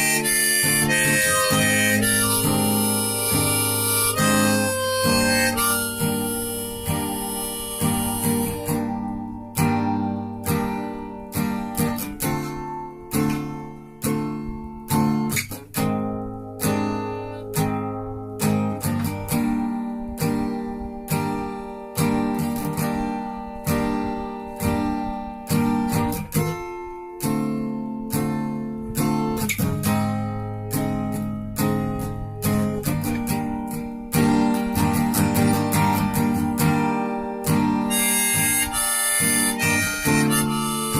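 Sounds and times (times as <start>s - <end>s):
harmonica: 0.0s - 9.8s, 34.9s - 36.8s, 37.5s - 40.9s
acoustic guitar strumming: 0.0s - 40.9s.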